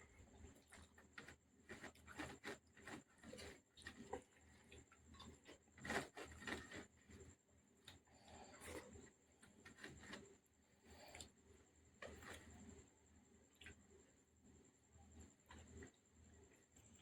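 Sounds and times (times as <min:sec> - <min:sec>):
person chewing food: 0:00.4 - 0:07.2.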